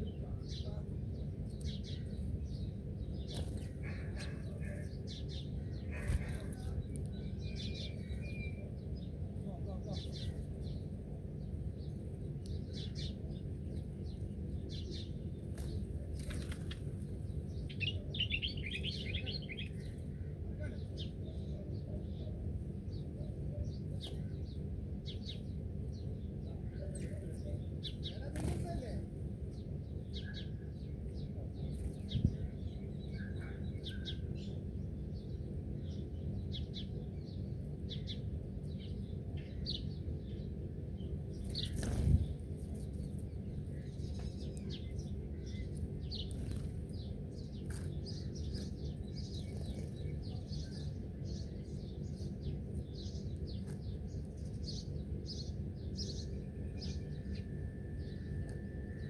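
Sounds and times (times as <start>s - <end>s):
small birds chirping: 0.0s - 59.0s
steady low rumble: 0.0s - 59.0s.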